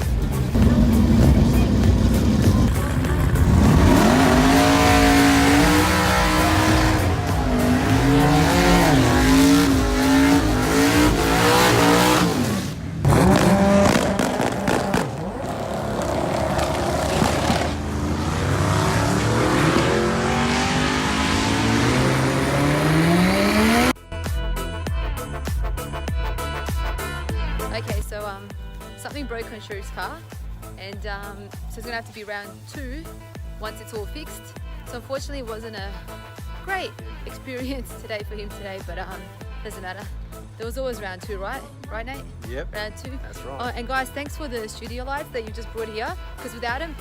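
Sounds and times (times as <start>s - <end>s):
music: 0.0s - 12.6s, 21.3s - 47.0s
car engine revving: 0.0s - 24.0s.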